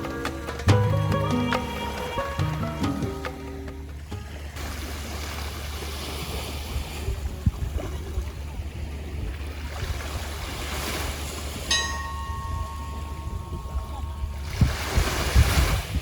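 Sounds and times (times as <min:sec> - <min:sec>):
surf: 0:00.0 - 0:16.0
wind: 0:00.0 - 0:16.0
ringing tone: 0:11.7 - 0:14.6.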